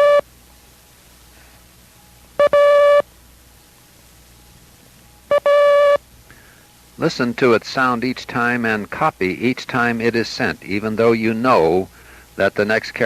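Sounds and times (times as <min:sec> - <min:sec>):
morse code beeps: 0:00.0 - 0:00.2, 0:02.4 - 0:03.0, 0:05.3 - 0:06.0.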